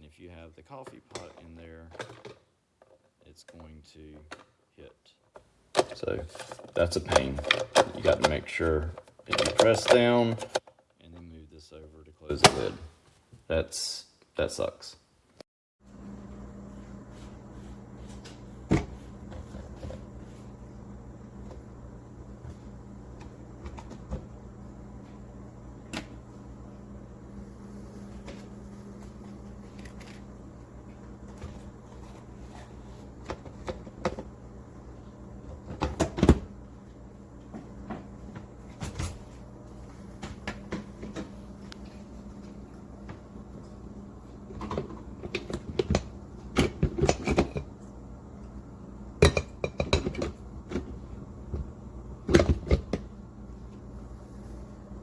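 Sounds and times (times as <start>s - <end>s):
kitchen items clunking and knocking: 0.8s - 4.6s, 5.4s - 10.8s, 12.3s - 13.0s, 18.0s - 20.7s, 27.9s - 34.8s, 35.4s - 36.6s, 37.4s - 43.8s, 44.4s - 48.6s, 49.2s - 53.2s
steady low hum: 15.9s - 55.0s.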